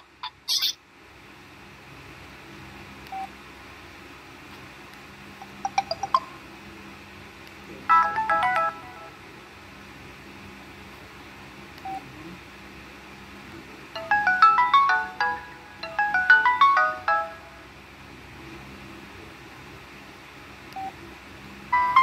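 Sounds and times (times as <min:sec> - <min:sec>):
phone ringtone melody: 0:05.6 - 0:06.4, 0:07.9 - 0:09.2, 0:14.0 - 0:17.7, 0:21.7 - 0:22.0.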